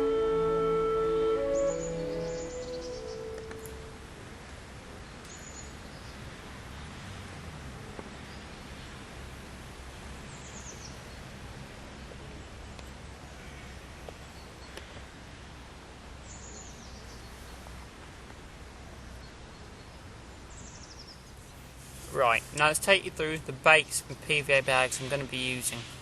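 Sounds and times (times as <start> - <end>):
bird call falling in pitch: 0.0 - 4.0.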